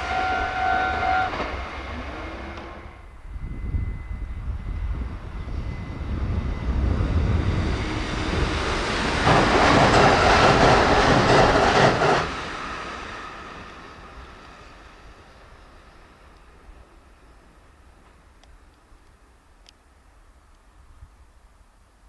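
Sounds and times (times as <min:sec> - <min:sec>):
train passing at high speed: 0:00.0 - 0:22.0
wheels clattering on rails: 0:07.5 - 0:12.5.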